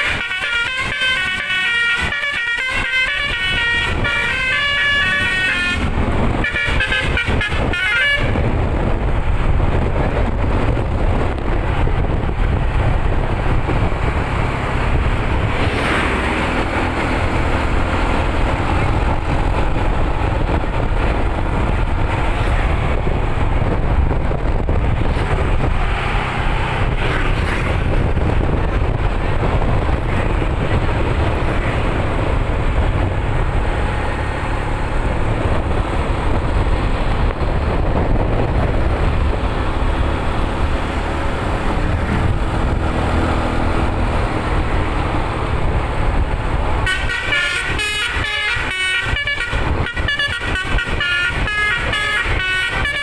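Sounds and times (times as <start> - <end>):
bus horn high changing tones: 0.0 - 8.6, 46.8 - 53.0
bus engine and road noise: 0.0 - 53.0.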